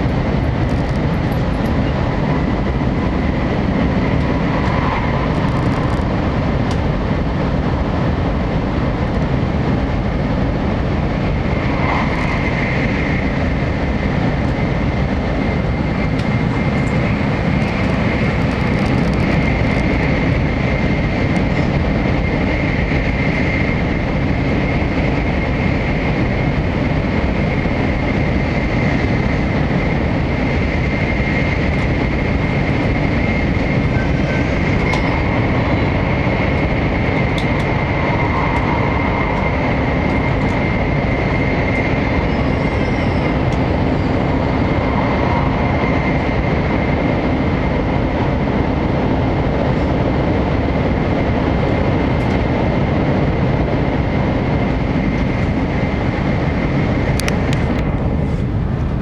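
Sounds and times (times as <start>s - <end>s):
train running noise rumble: 0.0s - 59.0s.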